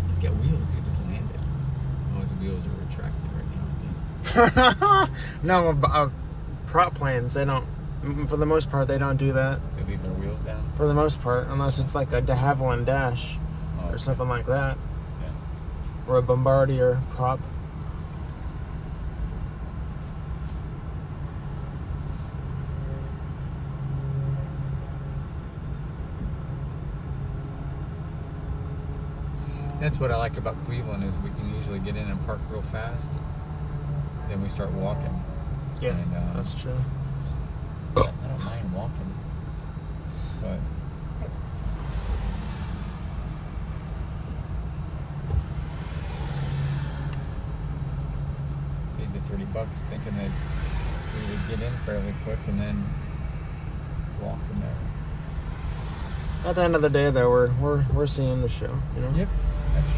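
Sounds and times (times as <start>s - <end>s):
low engine rumble: 0.0s - 59.9s
thump: 45.2s - 46.1s.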